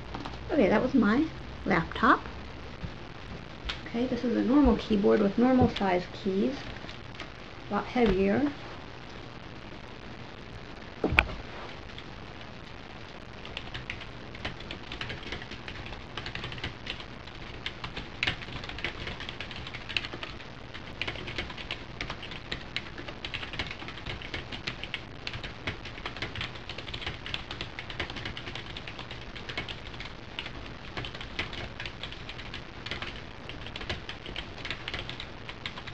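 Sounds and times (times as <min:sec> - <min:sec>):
typing on computer keyboard: 0:13.6 - 0:17.0, 0:17.6 - 0:35.9.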